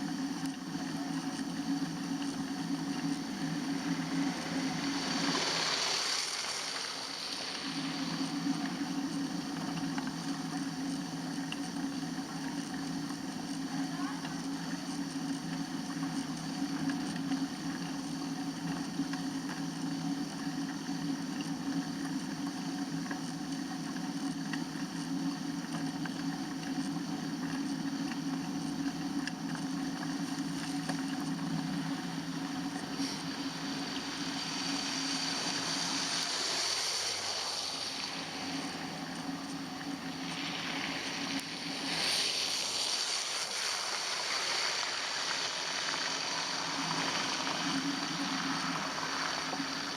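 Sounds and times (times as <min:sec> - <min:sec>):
bicycle tyres on wet snow: 0:00.1 - 0:23.2, 0:23.9 - 0:49.9
hiss: 0:03.8 - 0:08.6, 0:32.8 - 0:39.0, 0:40.2 - 0:49.9.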